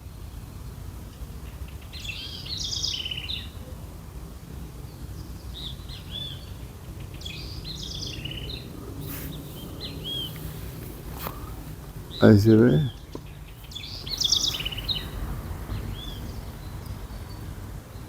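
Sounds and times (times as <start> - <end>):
songbird twittering: 1.5 - 3.6, 5.2 - 18.0
steady low rumble: 7.6 - 18.0
whistled bird notes: 11.2 - 17.5.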